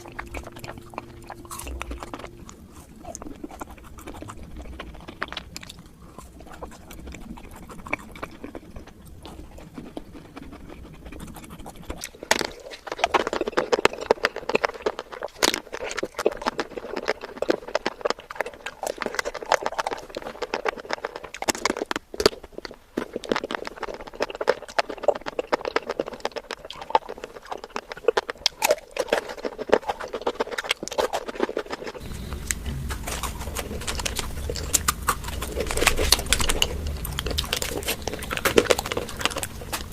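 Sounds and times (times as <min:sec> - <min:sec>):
low hum: 0:00.0 - 0:12.0, 0:32.0 - 0:39.9
chewing sweets: 0:00.0 - 0:39.9.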